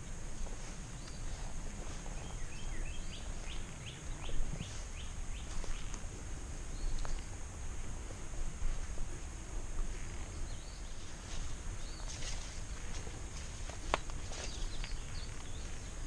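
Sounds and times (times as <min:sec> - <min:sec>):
steady low rumble: 0:00.0 - 0:16.0
bird chirping: 0:00.9 - 0:01.5, 0:02.1 - 0:06.0, 0:10.0 - 0:12.4, 0:13.9 - 0:16.0.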